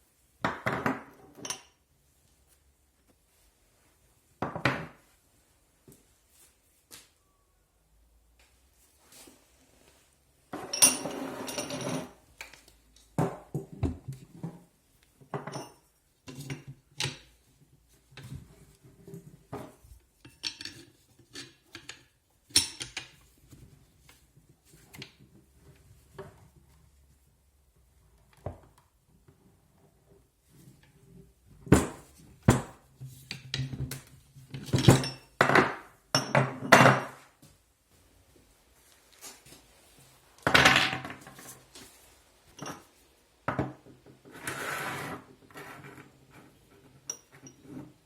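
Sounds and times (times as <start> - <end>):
metal tools clinking: 10.6 - 12.1.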